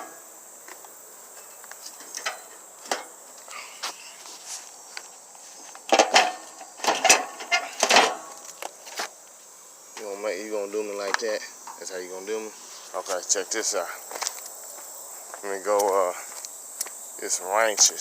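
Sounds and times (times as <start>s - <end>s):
crickets chirping: 0.0s - 18.0s
knocks and rattles on mower: 5.8s - 8.5s.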